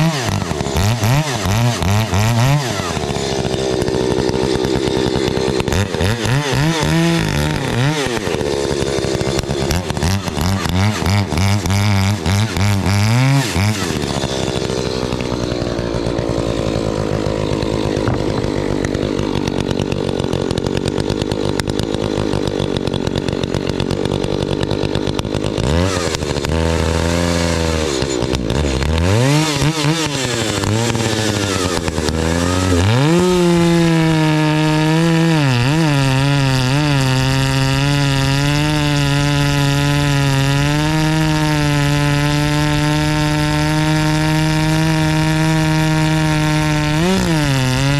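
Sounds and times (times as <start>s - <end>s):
chainsaw cutting wood: 0.0s - 47.9s.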